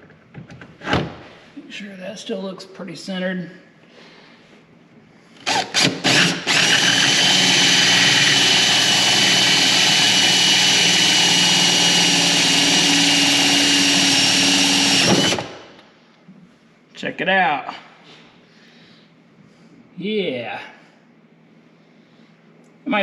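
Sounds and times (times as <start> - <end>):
power drill whining: 5.4 - 15.8.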